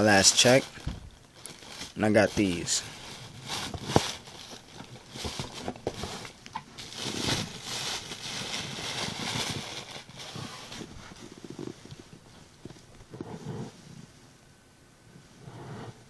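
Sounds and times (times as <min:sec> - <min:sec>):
shoebox rustling and clicking: 0:00.3 - 0:11.2.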